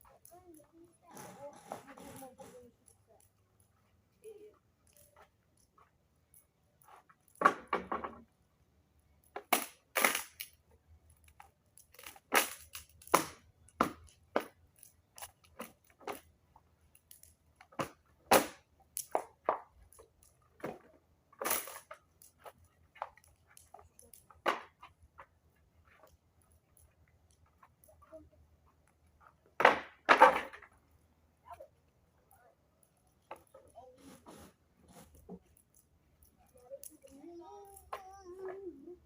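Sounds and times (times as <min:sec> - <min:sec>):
sharp cracks and crunches: 0:09.3 - 0:16.3, 0:17.0 - 0:20.4, 0:21.4 - 0:24.9.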